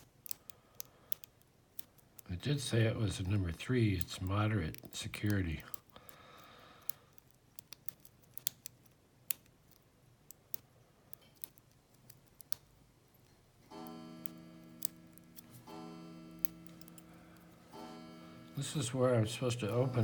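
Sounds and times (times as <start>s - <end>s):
lock pick clicking in padlock: 0.0s - 2.3s, 4.0s - 12.7s, 16.4s - 17.6s
clock chiming: 13.7s - 20.0s.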